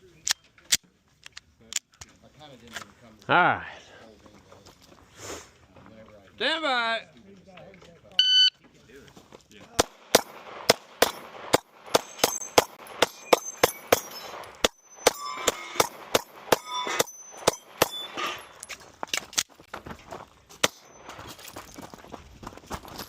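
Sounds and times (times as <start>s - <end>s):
pistol shots: 9.8s - 18.3s, 20.6s - 21.2s
steel targets pinging: 10.0s - 18.8s.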